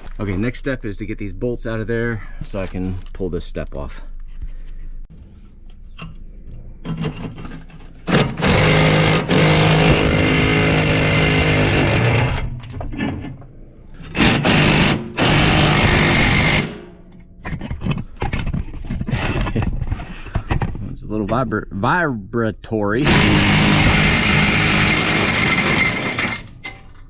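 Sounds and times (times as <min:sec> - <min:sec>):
impact wrench running: 0:08.1 - 0:12.6, 0:14.0 - 0:17.2, 0:23.0 - 0:26.6.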